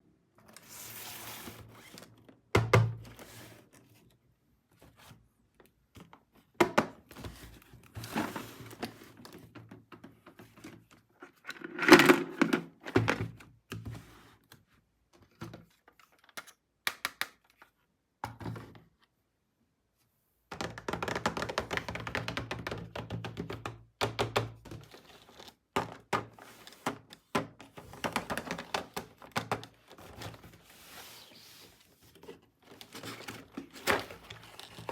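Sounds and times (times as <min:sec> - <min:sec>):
plastic toy pieces knocking and rattling: 0:11.5 - 0:13.2.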